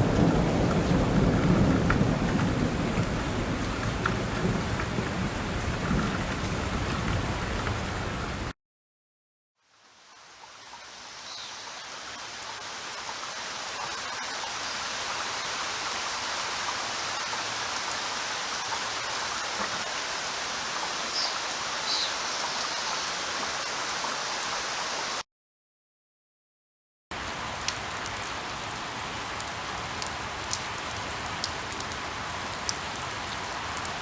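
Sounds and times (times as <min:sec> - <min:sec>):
rain hiss: 0:00.0 - 0:08.5, 0:09.6 - 0:25.2.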